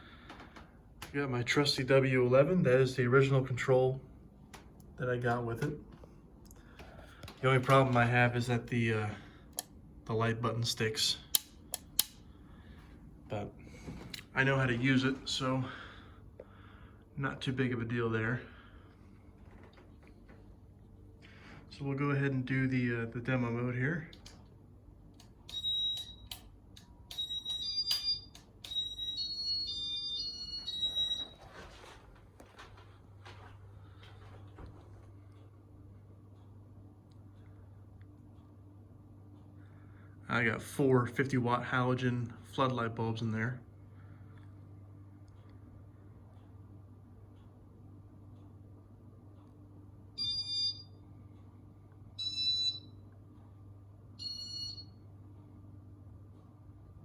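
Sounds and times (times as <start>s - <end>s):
faint low hum: 0.0s - 57.0s
sharp clicks: 11.3s - 12.2s, 25.1s - 28.9s
ceiling fan electronic beep: 25.2s - 31.9s, 48.4s - 56.6s.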